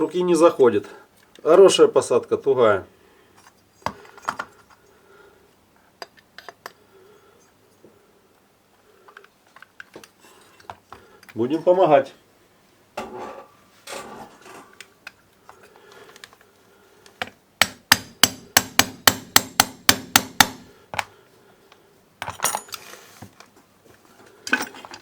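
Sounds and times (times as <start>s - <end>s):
hammer tapping on metal: 17.6s - 20.7s
metal parts clattering: 24.4s - 25.0s.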